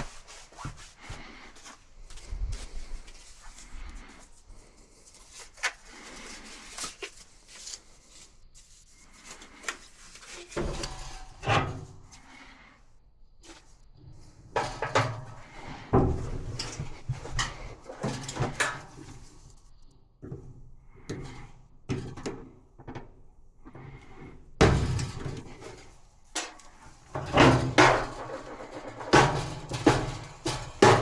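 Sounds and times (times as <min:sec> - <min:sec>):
knocks and clatter of handling: 0:14.2 - 0:19.5, 0:20.2 - 0:31.0.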